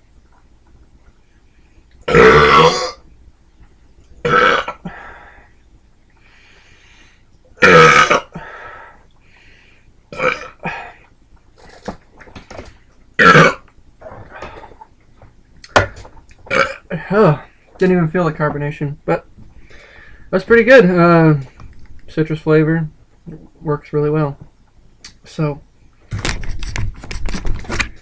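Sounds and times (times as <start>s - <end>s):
man burping: 2.1s - 3.0s, 4.2s - 5.1s, 7.6s - 8.6s, 10.1s - 11.0s, 13.2s - 13.6s, 16.5s - 17.4s.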